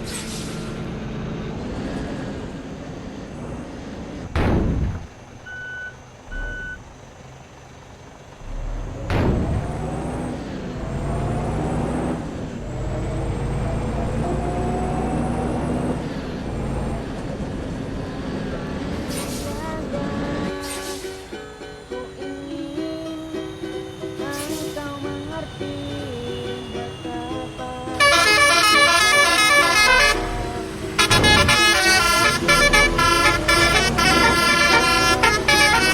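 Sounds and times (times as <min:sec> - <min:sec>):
air brake hiss: 0:00.0 - 0:00.8, 0:19.0 - 0:19.8, 0:20.5 - 0:21.5, 0:24.1 - 0:25.0
bus engine running: 0:00.0 - 0:35.9
short beeps: 0:05.4 - 0:06.8.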